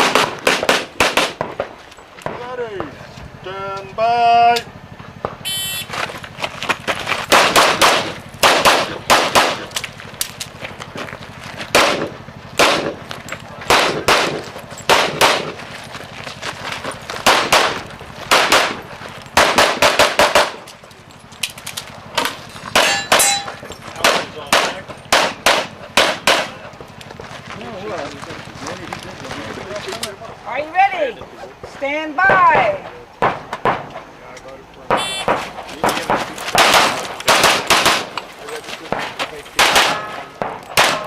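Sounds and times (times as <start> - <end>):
pistol shots: 0.0 - 2.9, 7.3 - 10.4, 11.7 - 15.6, 17.2 - 20.7, 22.2 - 26.6, 32.2 - 34.0, 34.9 - 38.2, 38.9 - 41.0
metallic clangs of steel targets: 21.4 - 26.6, 34.9 - 41.0.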